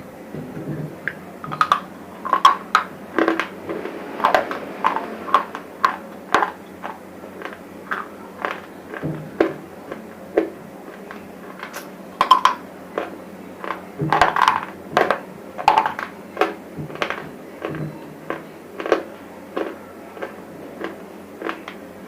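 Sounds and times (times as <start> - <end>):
crunching dry chips: 16.0 - 21.8.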